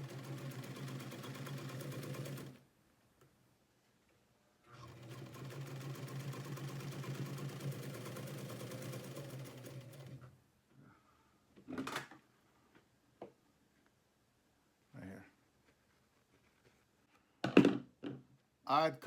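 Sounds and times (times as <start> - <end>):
sewing machine stitching: 0.0 - 2.6, 4.7 - 10.3.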